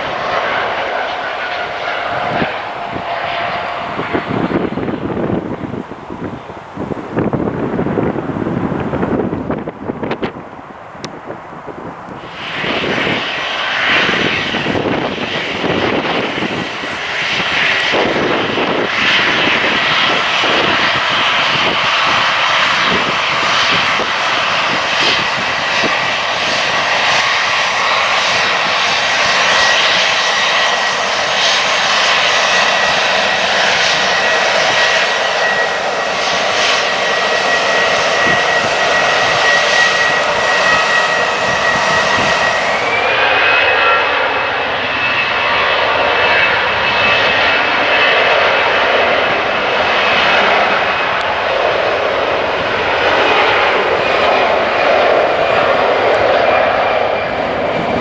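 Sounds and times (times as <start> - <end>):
airliner engines running: 0.0 - 58.0.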